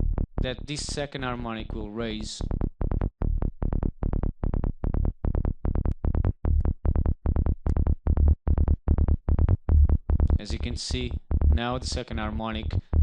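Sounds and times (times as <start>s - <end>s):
electronic kick and bass loop: 0.0s - 13.0s.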